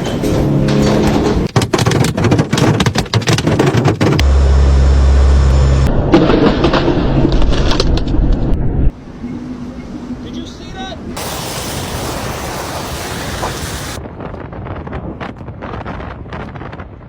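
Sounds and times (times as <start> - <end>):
storm wind roaring: 11.0 - 17.0.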